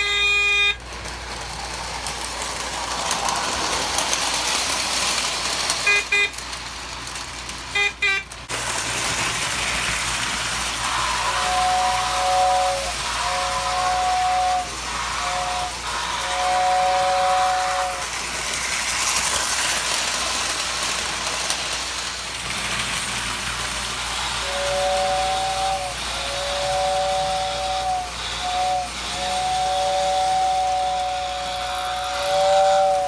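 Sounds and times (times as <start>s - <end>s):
two-note steam whistle blasts: 0.0s - 0.8s, 10.6s - 18.2s, 24.1s - 33.0s
model train running: 0.0s - 33.0s.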